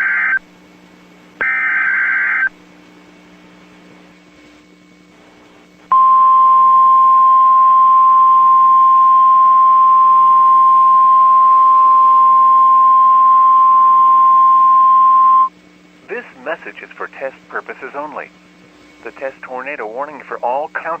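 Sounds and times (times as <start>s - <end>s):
faint hum and hiss: 0.0s - 21.0s
steady alarm tone: 1.4s - 2.6s, 5.9s - 15.5s.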